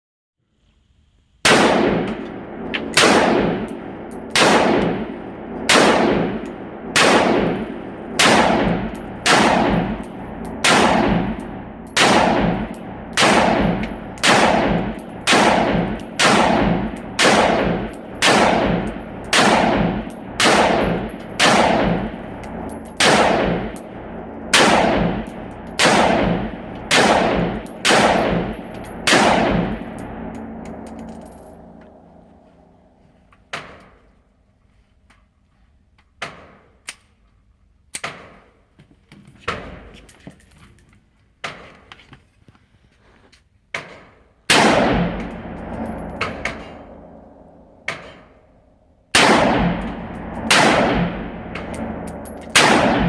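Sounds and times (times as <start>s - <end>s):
rifle shots echoing: 1.5s - 31.8s, 44.5s - 48.1s, 49.1s - 53.0s.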